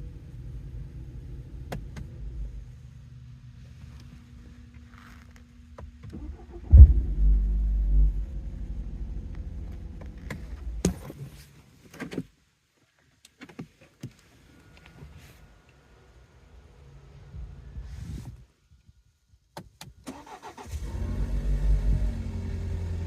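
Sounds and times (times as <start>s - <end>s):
engine low rumble: 0.0s - 11.9s, 14.2s - 19.4s, 20.2s - 23.0s
car engine starting with knock: 6.3s - 8.2s.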